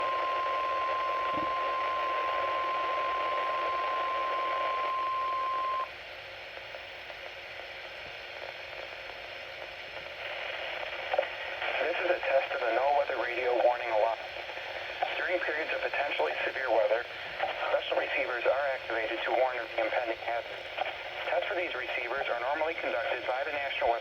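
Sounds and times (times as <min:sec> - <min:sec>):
steady alarm tone: 0:00.0 - 0:05.9
radio static hiss: 0:00.0 - 0:24.0.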